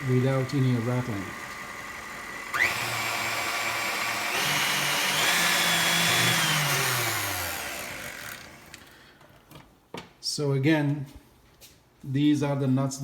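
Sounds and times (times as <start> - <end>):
stand mixer motor running: 0.0 - 8.9.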